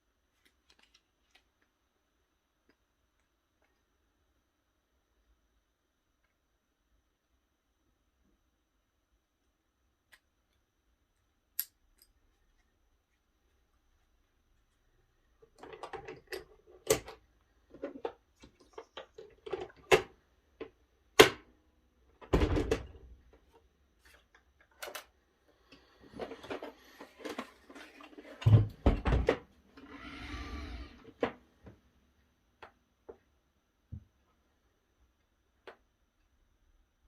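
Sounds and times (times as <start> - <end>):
plastic parts clicking and knocking: 15.4 - 21.5, 22.2 - 25.2.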